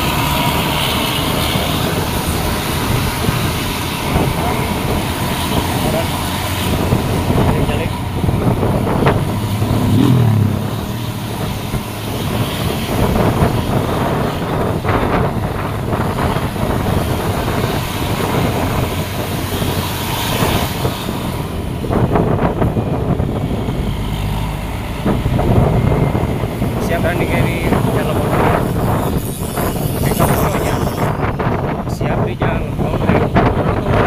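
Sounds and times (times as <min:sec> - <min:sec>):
road traffic passing: 0:00.0 - 0:34.0.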